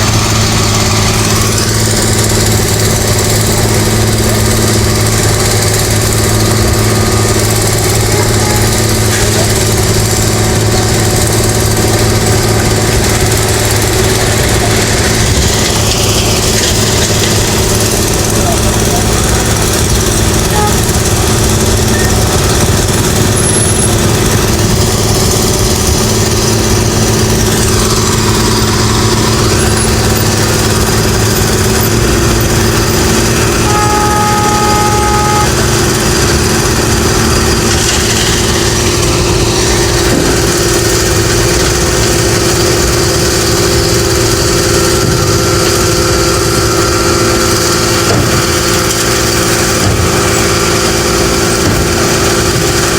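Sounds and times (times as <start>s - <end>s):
engine running steadily: 0.0s - 52.9s
two-note horn tone: 18.7s - 24.2s, 30.7s - 37.2s.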